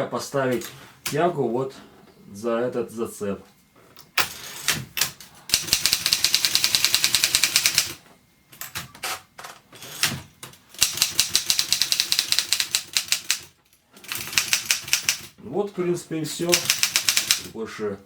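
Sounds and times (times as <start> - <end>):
manual typewriter keystrokes: 4.2 - 8.0, 9.9 - 15.4, 16.4 - 17.5
typewriter mechanism clunks: 16.5 - 17.5.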